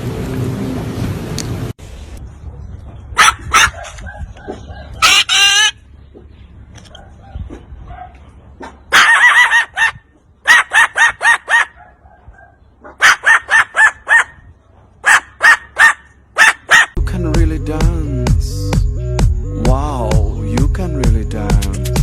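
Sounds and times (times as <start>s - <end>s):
parrot giving sharp calls: 5.0s - 5.8s, 8.9s - 11.7s.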